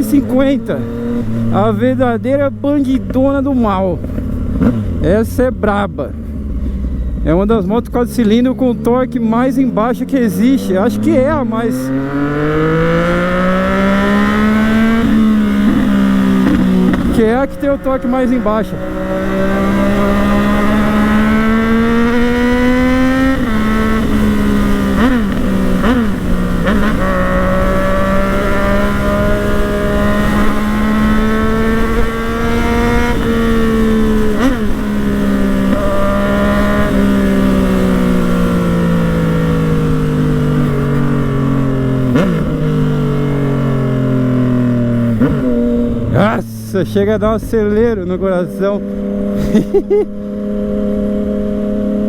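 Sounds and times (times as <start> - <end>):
motorcycle engine accelerating: 0.0 - 52.0.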